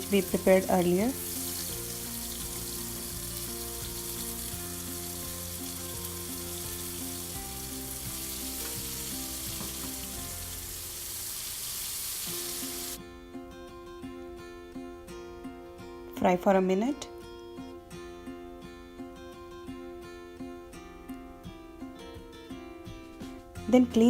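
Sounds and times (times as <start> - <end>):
paste sizzling in hot oil: 0.0 - 13.0.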